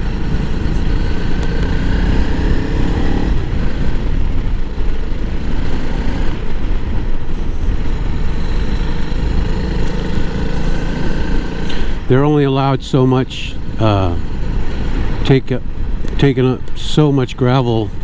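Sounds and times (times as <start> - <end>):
motorcycle engine running: 0.0 - 18.0.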